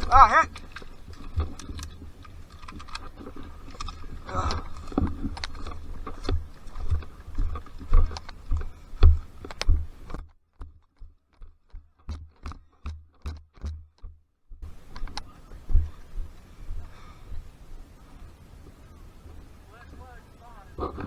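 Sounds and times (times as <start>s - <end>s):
footsteps: 0.0s - 10.2s, 14.6s - 20.2s
gear rattling: 0.0s - 16.9s.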